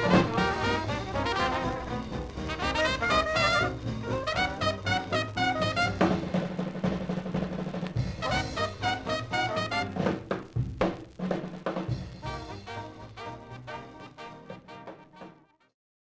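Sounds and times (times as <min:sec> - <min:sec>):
bass drum hits: 0:00.0 - 0:04.7
snare drum hits: 0:00.0 - 0:13.3
swing jazz with brass: 0:00.0 - 0:15.7.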